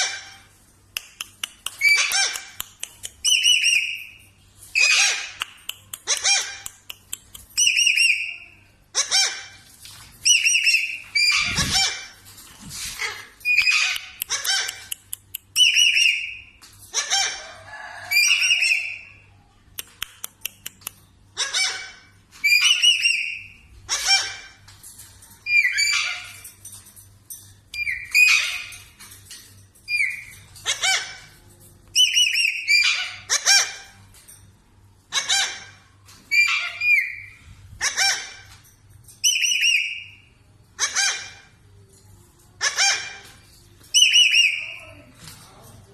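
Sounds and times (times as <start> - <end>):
parrot squawking: 0.0 - 0.5, 1.8 - 2.6, 3.2 - 4.2, 4.8 - 5.4, 6.0 - 6.9, 7.6 - 12.2, 12.9 - 15.0, 15.6 - 19.0, 21.3 - 24.6, 25.5 - 26.4, 27.8 - 28.9, 29.9 - 31.4, 32.0 - 34.0, 35.1 - 38.6, 40.8 - 41.6, 42.6 - 44.9
sharp clicks: 0.9 - 3.5, 5.3 - 7.6, 19.7 - 21.1.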